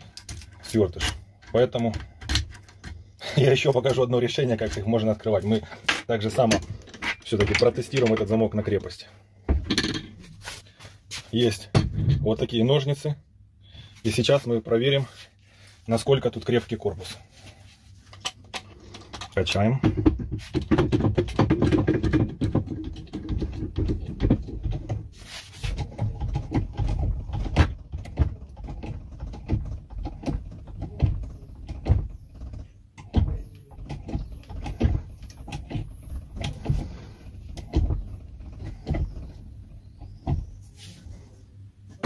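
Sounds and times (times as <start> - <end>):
hydraulic pump clicks and knocks: 0.0 - 3.0, 3.6 - 10.2, 18.2 - 40.6.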